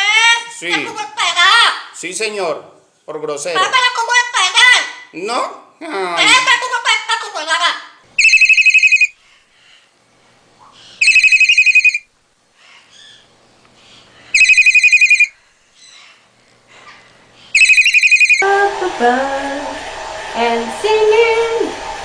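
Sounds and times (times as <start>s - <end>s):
high-pitched telephone ring: 8.2s - 9.2s, 11.0s - 12.1s, 14.4s - 15.4s, 17.6s - 18.5s.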